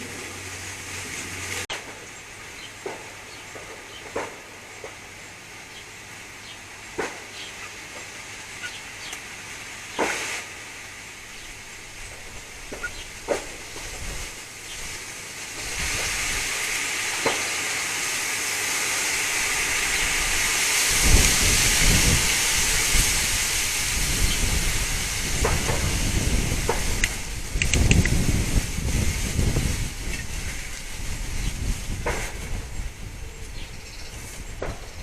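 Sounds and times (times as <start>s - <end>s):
wind gusting through trees: 0.0s - 35.0s
wind buffeting microphone: 11.2s - 17.3s, 19.2s - 35.0s
sharp clicks: 26.7s - 28.2s.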